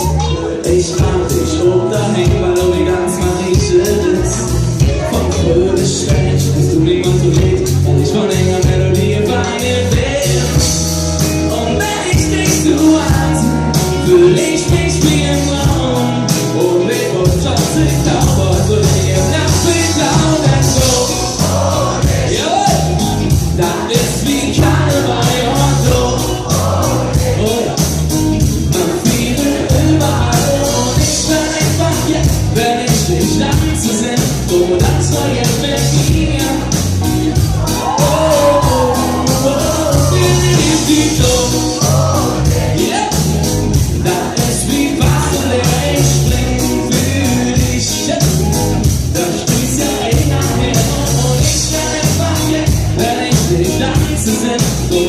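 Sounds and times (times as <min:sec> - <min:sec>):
person singing: 0:00.0 - 0:55.0
rock band playing: 0:00.0 - 0:55.0.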